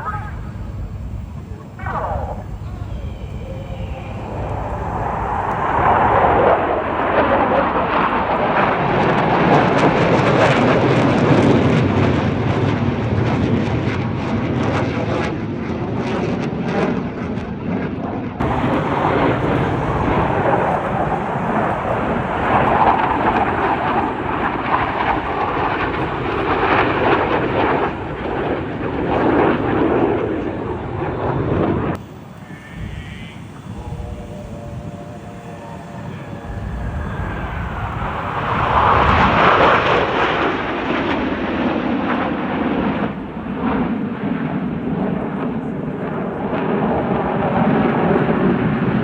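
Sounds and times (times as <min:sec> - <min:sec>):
jets roaring past: 0:00.0 - 0:49.0.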